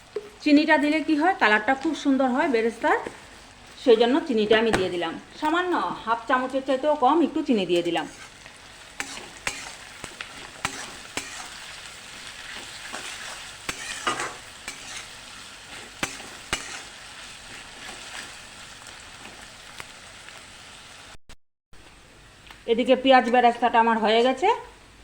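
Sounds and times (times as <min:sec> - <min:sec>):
onions sizzling in oil: 0:00.0 - 0:21.2
spatula scraping pan: 0:07.7 - 0:18.5.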